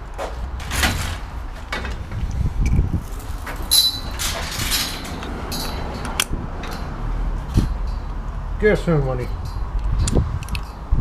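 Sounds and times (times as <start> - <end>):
shopping trolley rolling over tarmac: 2.8 - 5.9.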